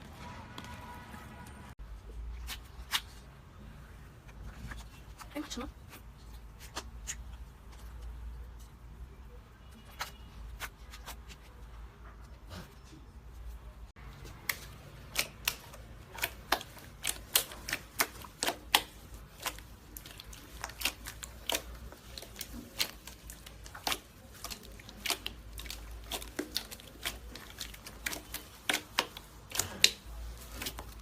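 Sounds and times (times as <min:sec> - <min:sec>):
slime crackling and popping: 0:14.4 - 0:31.0.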